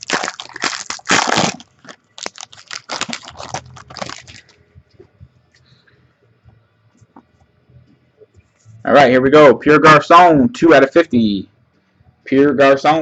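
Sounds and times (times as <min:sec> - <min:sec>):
card packaging torn and crinkled: 0:00.0 - 0:04.6.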